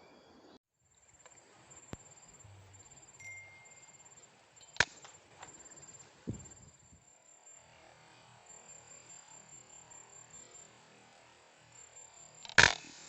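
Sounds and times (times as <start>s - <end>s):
faint high insect-like tone: 0.0s - 13.0s
dull thump: 6.3s - 6.8s
small click: 12.4s - 12.9s.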